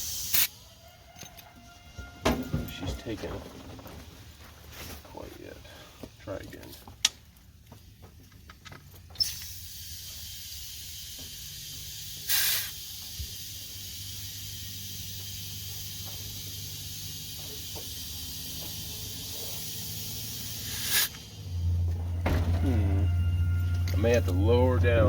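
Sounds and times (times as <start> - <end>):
compressed air hissing into tire: 0.0 - 0.6, 9.1 - 21.8.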